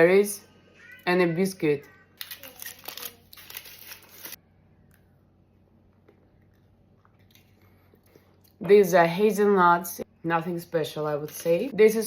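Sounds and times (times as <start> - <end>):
sweet wrapper rustling: 2.2 - 4.4.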